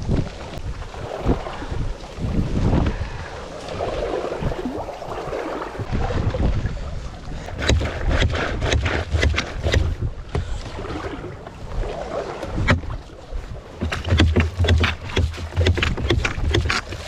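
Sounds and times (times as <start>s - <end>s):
wind gusting over microphone: 0.0s - 17.0s
knocks: 13.8s - 16.9s.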